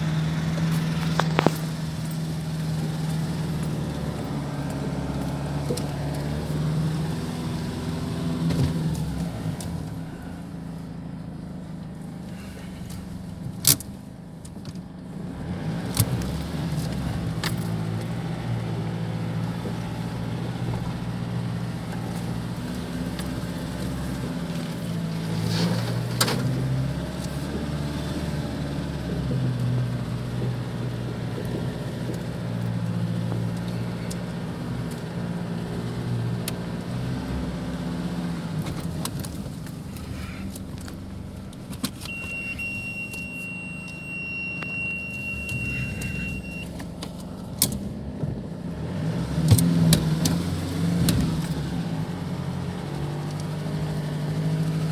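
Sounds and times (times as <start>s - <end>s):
diesel engine running under load: 0.0s - 54.9s
steady high tone: 42.1s - 46.7s.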